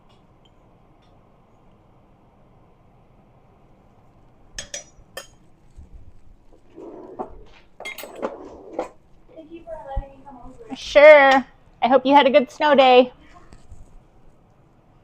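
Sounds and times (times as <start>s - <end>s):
dishes clattering: 6.7s - 9.0s
utensils clinking against dishes: 7.8s - 9.0s.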